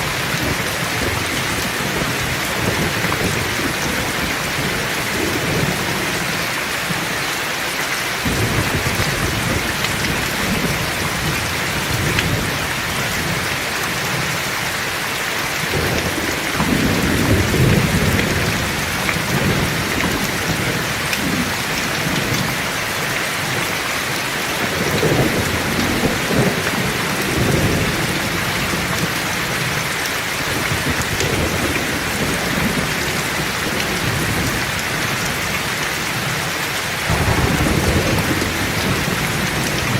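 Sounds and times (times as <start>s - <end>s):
rolling thunder: 0.0s - 6.3s, 8.2s - 15.0s, 15.6s - 23.8s, 24.4s - 29.8s, 37.0s - 39.9s
heavy rain: 0.0s - 39.9s.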